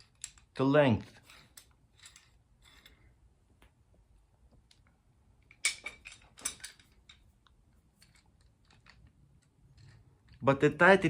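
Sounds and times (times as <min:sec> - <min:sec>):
small metal hardware clicking: 0:05.4 - 0:10.4.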